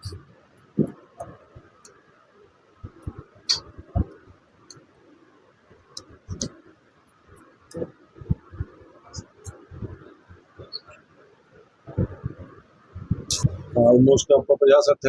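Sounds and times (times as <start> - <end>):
soft low thumps: 2.8 - 4.4, 7.3 - 10.9, 11.9 - 14.2.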